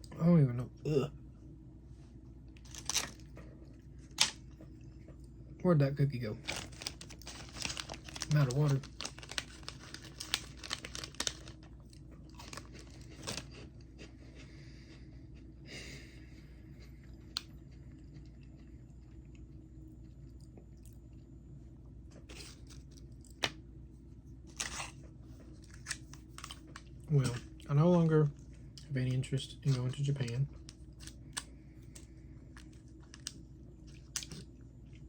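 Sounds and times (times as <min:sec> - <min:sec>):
person chewing a crunchy snack: 0:06.5 - 0:15.6, 0:17.2 - 0:21.1, 0:24.5 - 0:27.7, 0:30.5 - 0:35.0.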